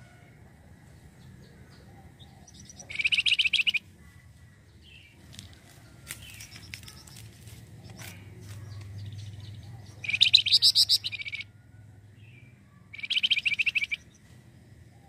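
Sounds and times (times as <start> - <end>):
bird chirps: 1.2 - 4.1, 6.1 - 11.6, 12.2 - 15.0
bird chattering trill: 2.1 - 3.9, 9.0 - 11.5, 12.9 - 14.2.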